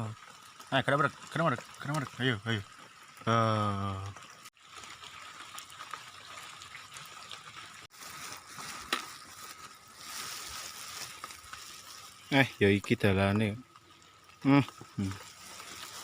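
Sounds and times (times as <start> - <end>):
steady rain falling: 14.4 - 16.0.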